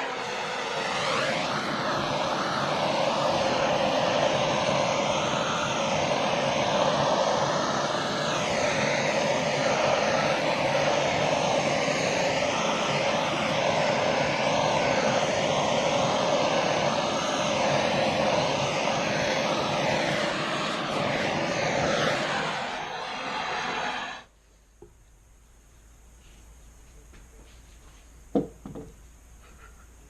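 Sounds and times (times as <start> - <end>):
electric blower running: 0.0 - 24.3.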